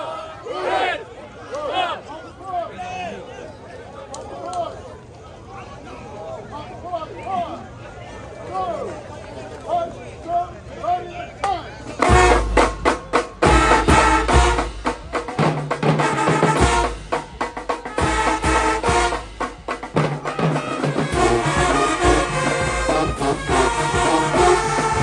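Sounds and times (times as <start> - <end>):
marching band playing: 12.0 - 25.0.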